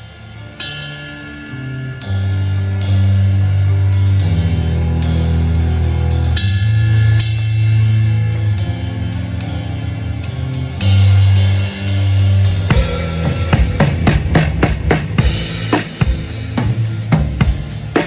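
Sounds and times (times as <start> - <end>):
held bass notes: 0.0 - 18.0
drum kit: 10.5 - 18.0
cymbal crash: 12.7 - 18.0.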